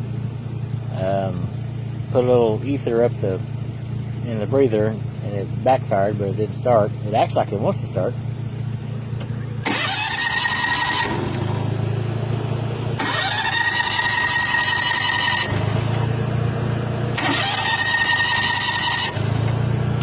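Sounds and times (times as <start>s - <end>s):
electric starter cranking engine: 9.2s - 12.0s, 12.9s - 16.2s, 17.1s - 20.0s.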